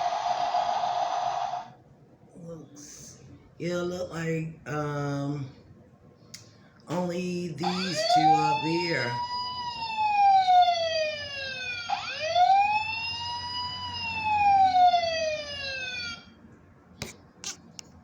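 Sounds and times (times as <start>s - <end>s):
toy electronic wailing siren: 0.0s - 1.8s, 7.6s - 16.4s.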